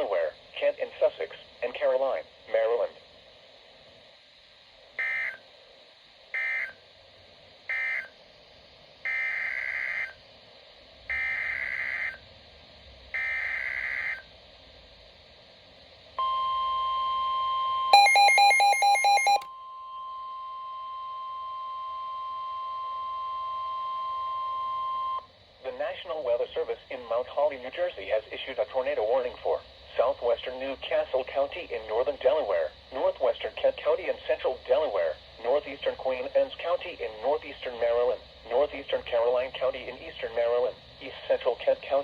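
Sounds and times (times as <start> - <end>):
rapid loud beeps: 17.9 - 19.4.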